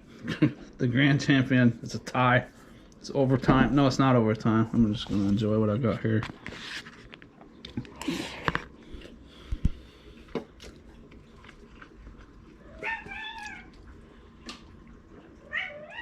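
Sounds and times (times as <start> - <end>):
cat meowing: 12.6 - 13.7, 15.4 - 16.0.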